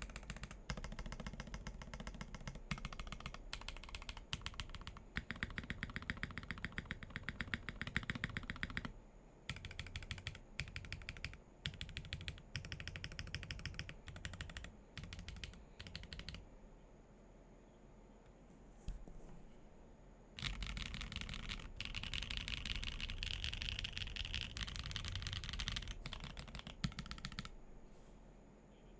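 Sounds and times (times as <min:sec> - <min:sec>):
mechanical keyboard typing: 0:00.0 - 0:08.9, 0:09.5 - 0:16.4, 0:20.4 - 0:27.6.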